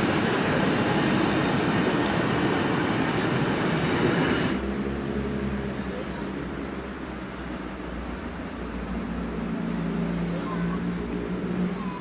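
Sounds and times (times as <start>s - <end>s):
train wheels on rails: 0.0s - 4.7s.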